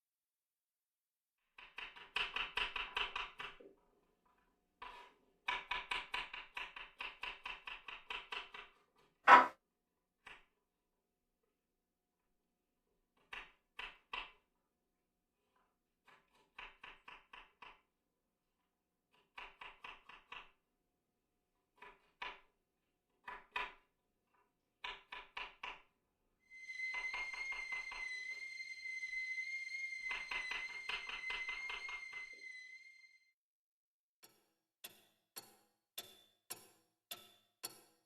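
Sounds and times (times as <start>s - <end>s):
high whistling tone: 26.5s - 33.3s.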